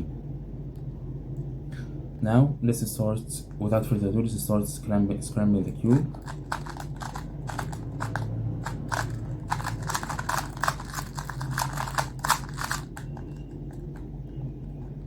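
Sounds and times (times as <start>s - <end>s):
plastic puzzle cube clicking: 6.2s - 13.9s.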